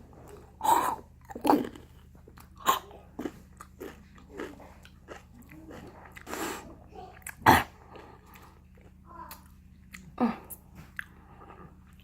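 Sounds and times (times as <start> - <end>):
person crunching something crisp: 0.6 - 6.6.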